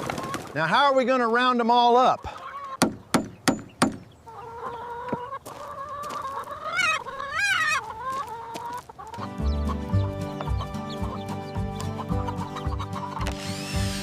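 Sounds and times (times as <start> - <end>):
chickens clucking and squawking: 0.0 - 14.0
music with steady beat: 9.2 - 14.0.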